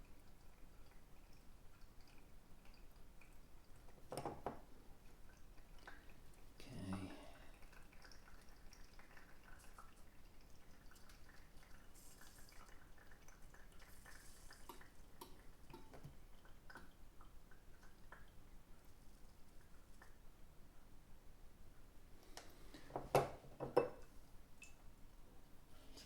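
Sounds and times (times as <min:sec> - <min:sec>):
coffee dripping into cup: 0:00.0 - 0:20.2.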